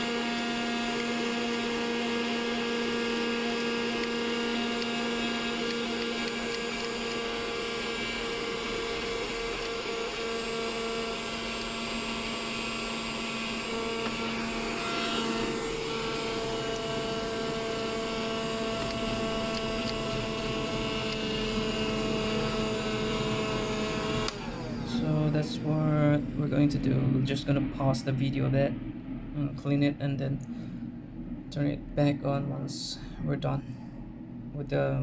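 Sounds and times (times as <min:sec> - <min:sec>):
vacuum cleaner running: 0:00.0 - 0:27.8.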